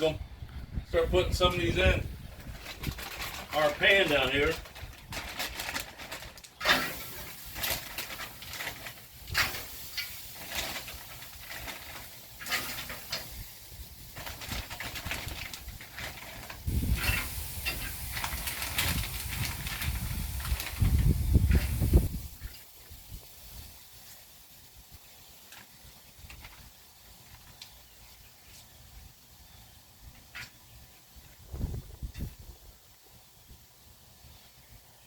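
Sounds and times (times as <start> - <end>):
wood chips dropped into metal pan: 6.6 - 13.4.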